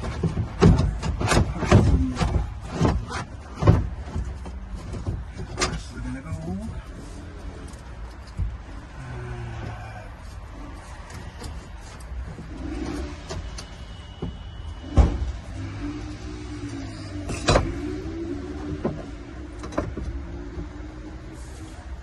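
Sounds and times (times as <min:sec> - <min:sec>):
wavering whine: 0:11.8 - 0:22.0.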